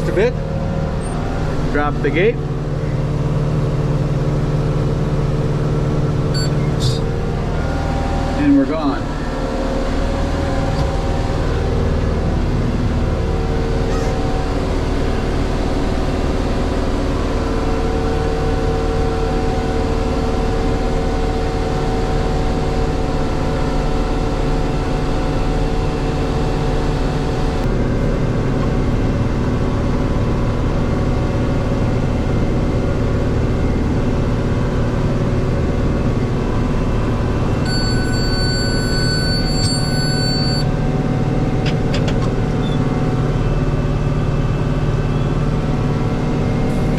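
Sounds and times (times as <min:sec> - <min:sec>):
tractor engine droning: 0:00.0 - 0:46.9
baler whining: 0:06.3 - 0:17.0
steady high tone: 0:13.5 - 0:16.3, 0:37.6 - 0:40.7.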